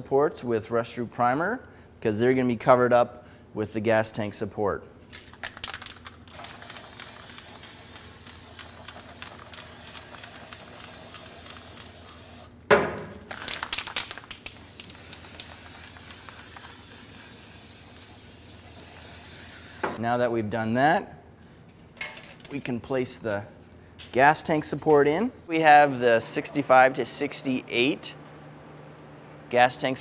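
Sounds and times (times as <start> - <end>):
aerosol can spraying hiss: 6.3 - 12.5, 14.5 - 20.0.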